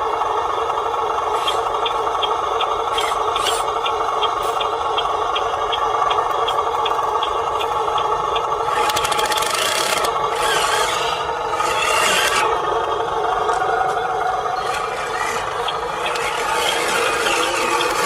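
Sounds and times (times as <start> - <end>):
light repeating tick: 1.5 - 2.8, 3.4 - 8.5
small electric motor running: 2.9 - 3.7, 8.6 - 12.9, 14.5 - 18.0.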